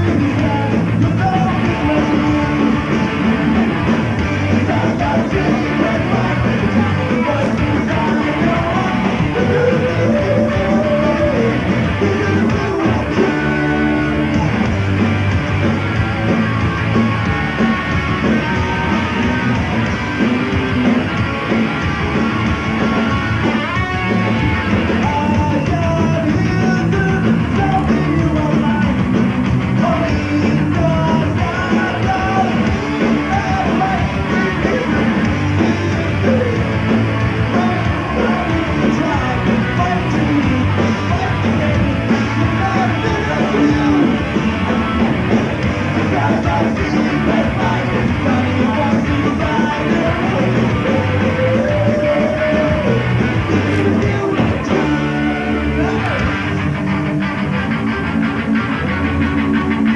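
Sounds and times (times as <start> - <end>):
person singing lead vocal: 0.0 - 14.7, 24.9 - 56.4
punk rock band playing live: 0.0 - 59.9.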